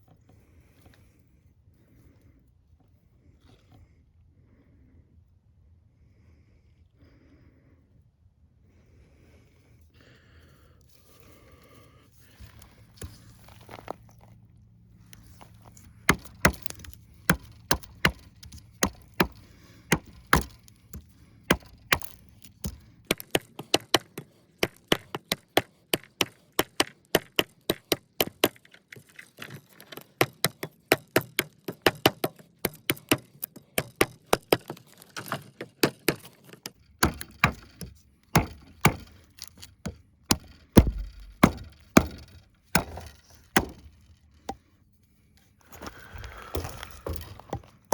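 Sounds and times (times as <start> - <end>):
knife chopping wood: 12.4 - 14.1, 15.2 - 44.6
heavy thuds: 15.1 - 23.5, 36.9 - 44.1.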